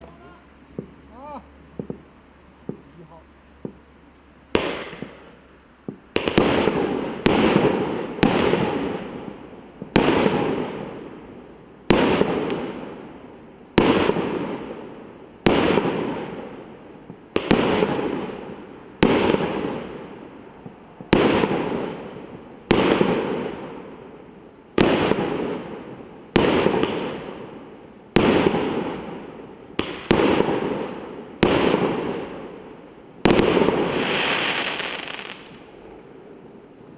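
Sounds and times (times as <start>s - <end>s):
firework shots banging: 1.8s - 2.9s, 4.5s - 9.2s, 28.2s - 32.5s, 33.2s - 36.0s.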